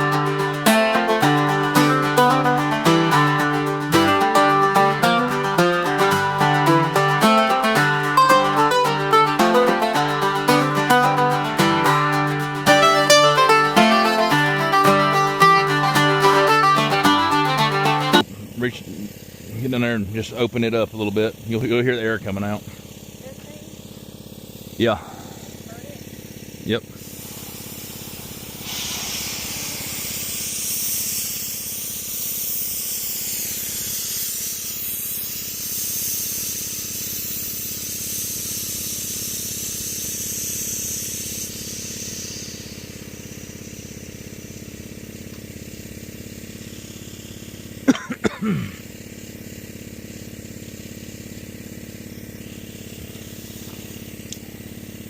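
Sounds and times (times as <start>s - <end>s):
engine idling: 0.0s - 55.0s
air hissing out of tire: 23.8s - 55.0s.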